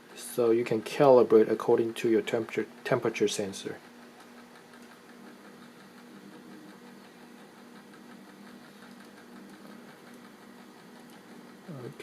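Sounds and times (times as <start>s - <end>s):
rapid ticking: 0.4s - 12.0s.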